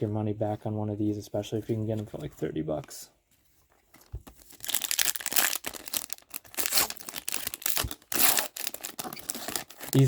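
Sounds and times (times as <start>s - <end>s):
plastic wrapping crinkling and tearing: 4.0s - 10.0s.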